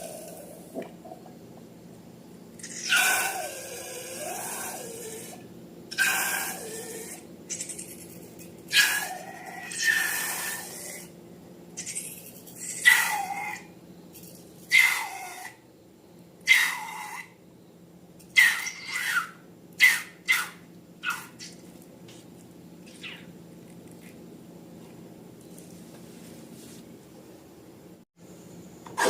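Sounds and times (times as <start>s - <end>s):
wet squeaky slime squelches: 18.4s - 19.3s, 20.0s - 21.7s, 22.8s - 23.4s.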